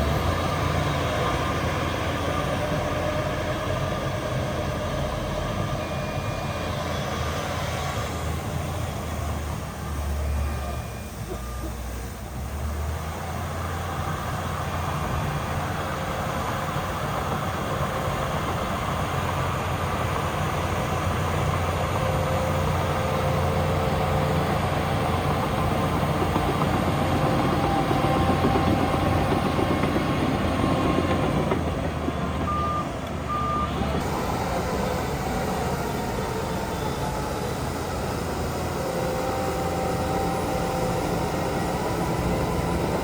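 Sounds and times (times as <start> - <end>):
diesel engine running under load: 0.0 - 43.0
reversing beeps: 5.0 - 7.5, 9.2 - 12.4, 32.4 - 43.0.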